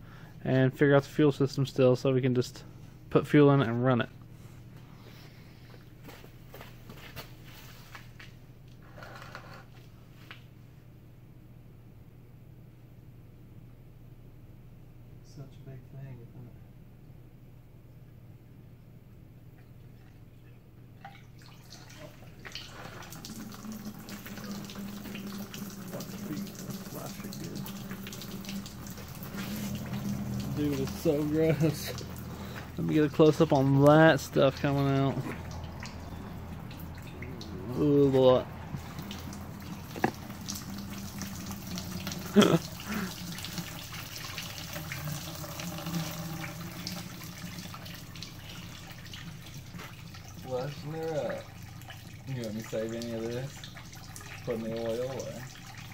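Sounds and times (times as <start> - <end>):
liquid pouring and splashing: 21.0 - 55.9
fuel streaming out of tank: 22.3 - 33.2.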